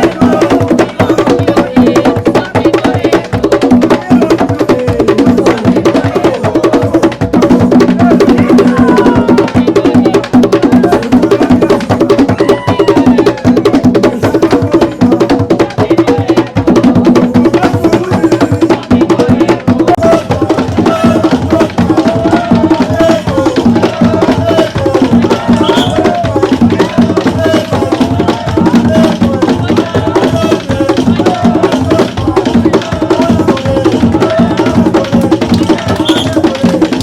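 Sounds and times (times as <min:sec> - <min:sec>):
hand drums in fast rhythm: 0:00.0 - 0:37.0.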